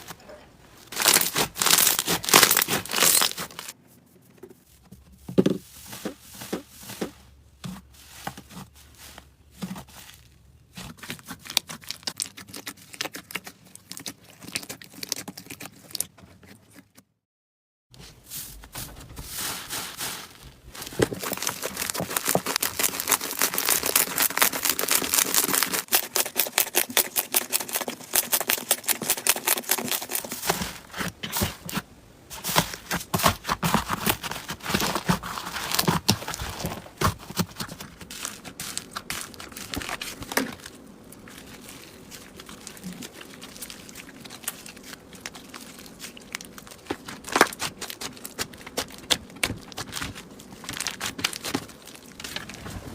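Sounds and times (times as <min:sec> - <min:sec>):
slime crackling and popping: 0:00.9 - 0:03.8, 0:20.7 - 0:30.6, 0:33.2 - 0:52.4.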